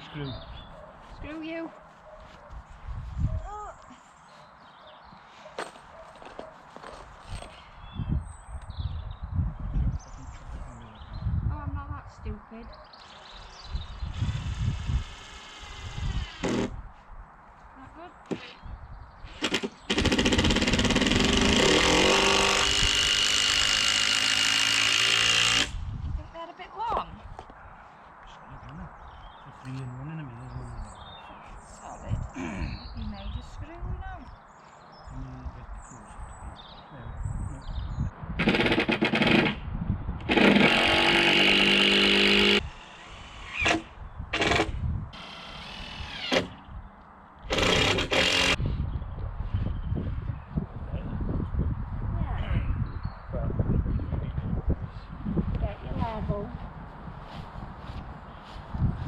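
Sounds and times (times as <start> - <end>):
power drill driving screws: 14.1 - 16.7, 19.3 - 25.8, 38.4 - 39.6, 40.2 - 46.6, 47.5 - 48.6.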